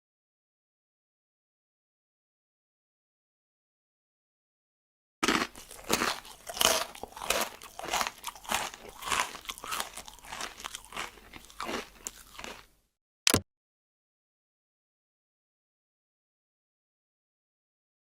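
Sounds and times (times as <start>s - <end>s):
crunching like chewing: 5.2s - 12.8s.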